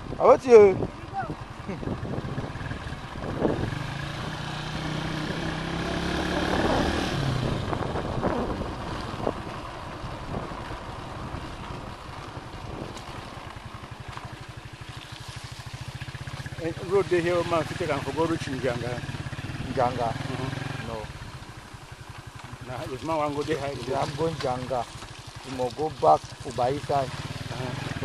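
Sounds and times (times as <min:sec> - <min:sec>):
wind on microphone: 0:00.0 - 0:13.2
small motorcycle engine: 0:00.0 - 0:28.0.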